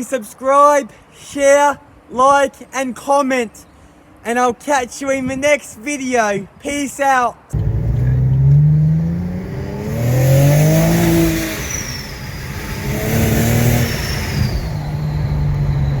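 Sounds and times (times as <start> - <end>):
tyre and road noise: 7.5 - 16.0
car engine accelerating: 7.6 - 16.0.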